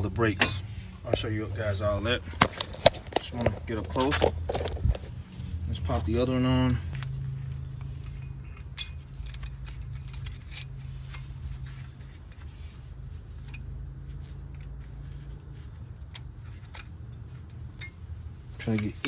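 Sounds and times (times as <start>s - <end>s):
steady low hum: 0.0s - 19.0s
metallic clicks of brake parts: 6.6s - 12.5s, 13.4s - 19.0s.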